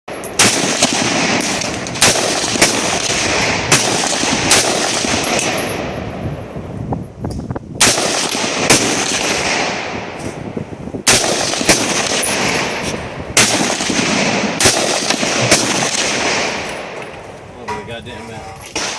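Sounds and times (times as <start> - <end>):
rifle shots echoing: 0.1 - 6.2, 7.8 - 10.2, 11.0 - 17.4.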